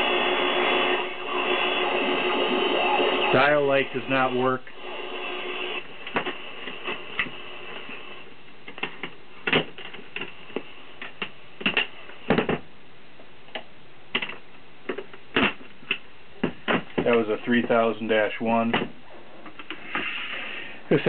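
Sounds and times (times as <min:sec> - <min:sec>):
steady hiss: 0:00.0 - 0:12.6, 0:15.3 - 0:21.0
radio knobs and switches clicking: 0:01.2 - 0:12.6, 0:13.5 - 0:17.9, 0:18.6 - 0:20.1.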